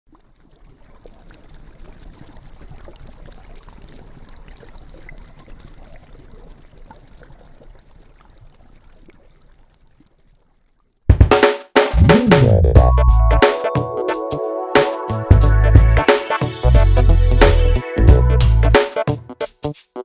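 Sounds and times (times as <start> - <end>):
water and boat noise: 0.1 - 11.0.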